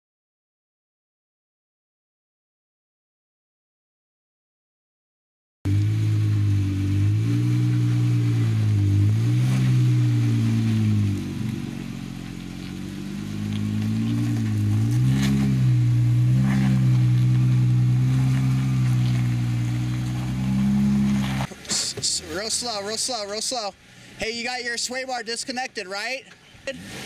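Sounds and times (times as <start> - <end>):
car engine revving at low speed: 5.7 - 23.2, 26.7 - 27.0.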